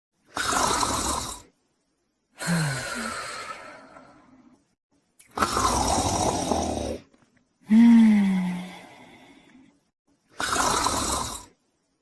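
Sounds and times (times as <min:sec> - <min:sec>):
dog snoring: 0:10.4 - 0:11.5.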